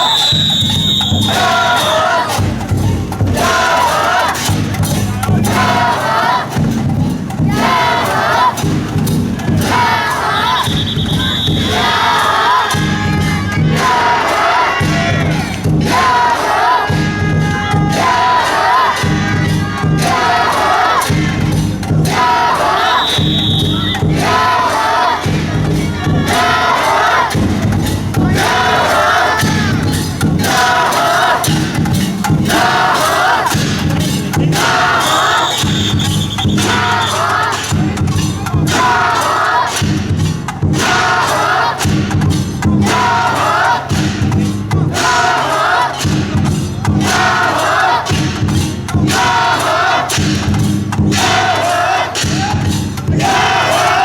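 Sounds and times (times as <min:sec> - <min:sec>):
fast drum beat: 0:00.0 - 0:54.0
group shouting call-and-response chant: 0:00.0 - 0:54.0.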